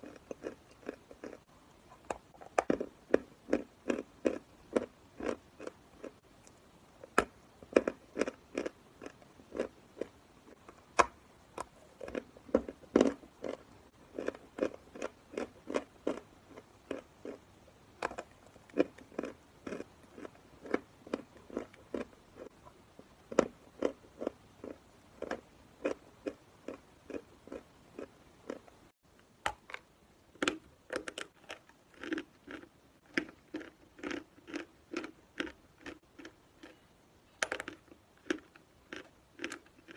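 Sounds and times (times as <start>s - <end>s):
chalk being chewed crunching: 31.0s - 36.8s.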